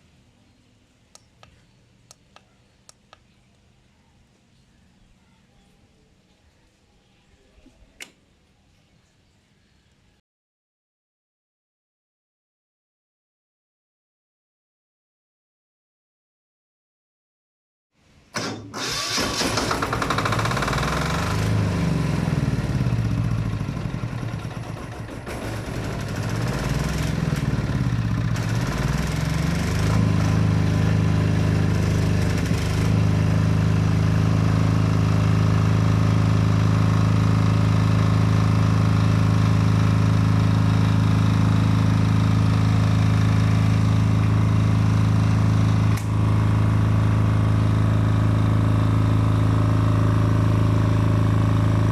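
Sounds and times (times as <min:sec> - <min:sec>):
diesel generator engine running: 0:18.4 - 0:51.9.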